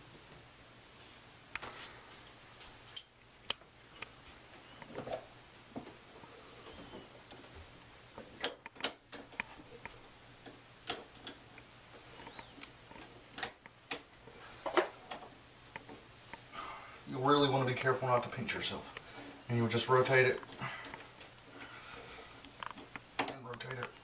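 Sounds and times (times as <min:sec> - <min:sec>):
metallic clicks of bolt parts: 0:02.6 - 0:03.2, 0:08.4 - 0:09.5, 0:12.4 - 0:14.1.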